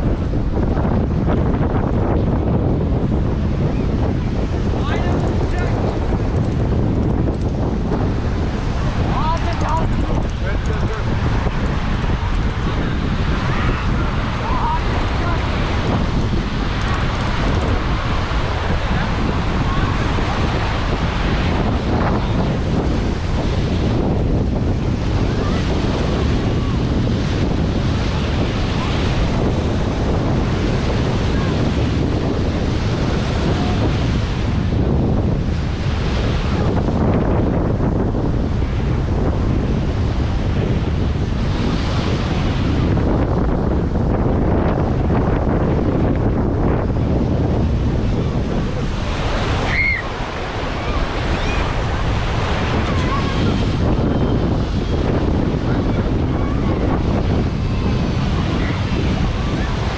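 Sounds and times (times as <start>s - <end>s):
waves washing on a beach: 0.0s - 59.9s
wind buffeting the microphone: 0.0s - 59.9s
high-pitched cry: 49.7s - 50.1s.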